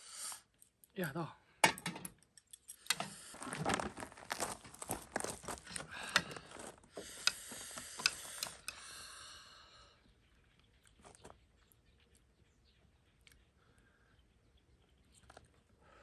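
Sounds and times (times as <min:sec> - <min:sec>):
mouth clicks and smacks: 0:15.1 - 0:15.6.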